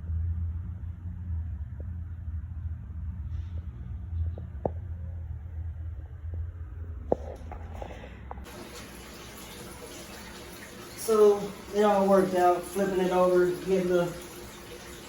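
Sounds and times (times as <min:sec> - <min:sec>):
low rumble: 0:00.0 - 0:08.5
water pouring into a tank: 0:07.5 - 0:15.0.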